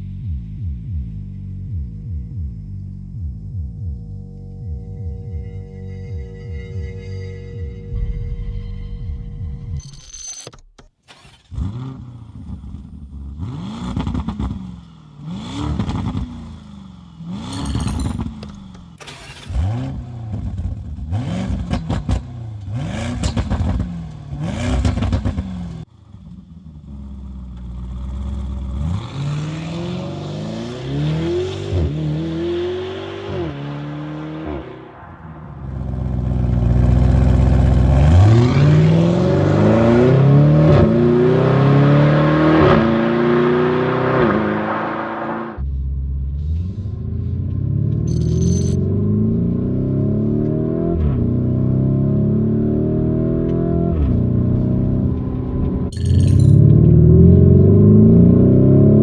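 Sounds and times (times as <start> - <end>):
car engine revving: 10.4 - 25.8, 26.8 - 45.6
car accelerating through gears: 35.8 - 45.6.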